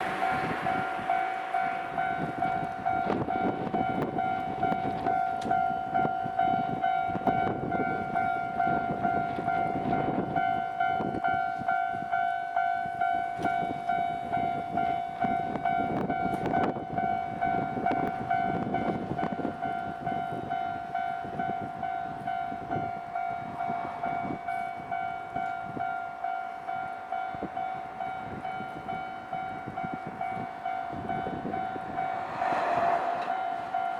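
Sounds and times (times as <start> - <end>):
train wheels clattering: 30.9 - 33.9.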